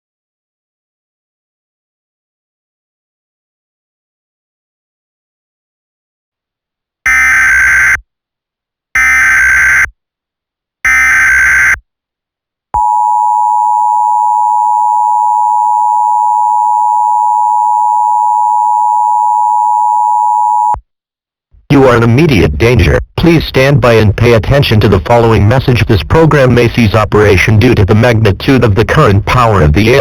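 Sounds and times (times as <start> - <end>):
screechy digital data tones: 9.0 - 9.9, 10.9 - 11.8
two-tone attention signal: 10.9 - 11.8, 12.8 - 20.8.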